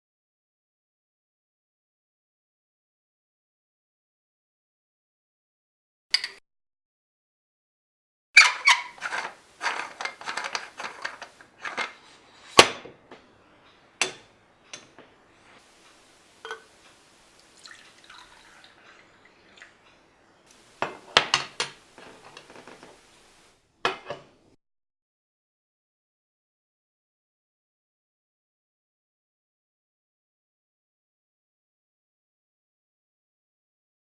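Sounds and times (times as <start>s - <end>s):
cups and utensils clinking: 6.1s - 6.4s, 8.4s - 13.0s, 16.4s - 19.8s, 20.8s - 23.2s.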